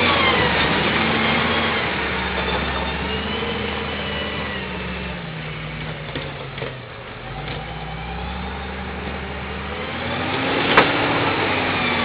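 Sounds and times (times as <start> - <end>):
diesel engine revving under work: 0.0 - 12.0.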